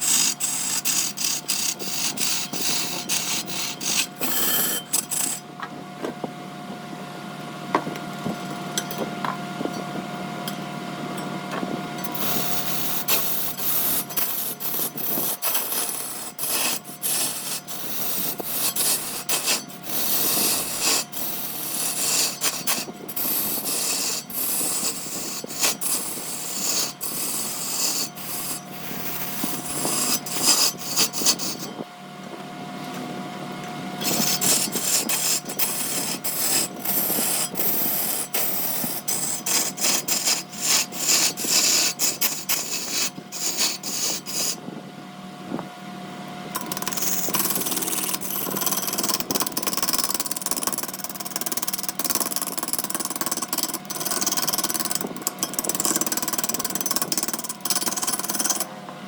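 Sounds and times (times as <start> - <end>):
tool cutting wood on lathe: 0.0 - 5.4, 12.0 - 31.8, 34.0 - 44.6, 46.6 - 58.7
lathe whine: 0.0 - 58.8.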